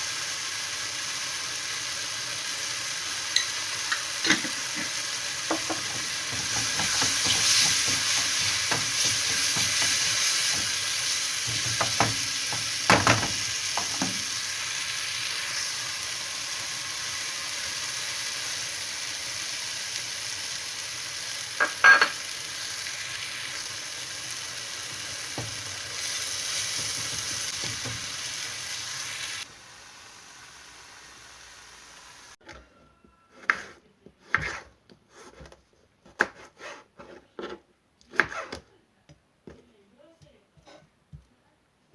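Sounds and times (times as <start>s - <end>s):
food sizzling in a frying pan: 0.0s - 32.4s.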